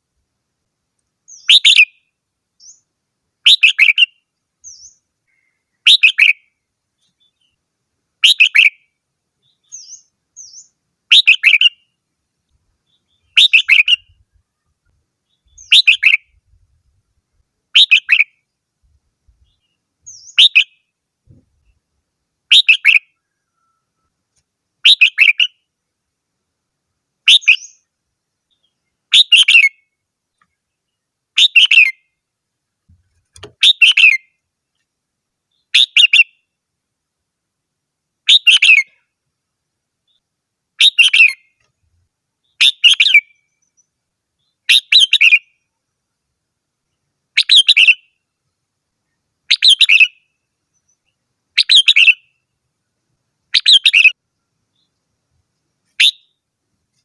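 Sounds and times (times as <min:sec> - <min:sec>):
bird singing warbled phrase: 0:01.3 - 0:07.6, 0:08.2 - 0:11.9, 0:12.8 - 0:16.4, 0:17.8 - 0:18.4, 0:19.4 - 0:20.9, 0:22.5 - 0:24.1, 0:24.8 - 0:25.6, 0:27.3 - 0:27.9, 0:28.5 - 0:29.8, 0:31.4 - 0:32.0, 0:33.4 - 0:34.3, 0:35.5 - 0:36.4, 0:38.3 - 0:39.0, 0:40.8 - 0:41.5, 0:42.4 - 0:43.8, 0:44.4 - 0:45.5, 0:47.4 - 0:48.1, 0:49.5 - 0:50.2, 0:51.6 - 0:52.3, 0:53.5 - 0:54.2, 0:56.0 - 0:56.4.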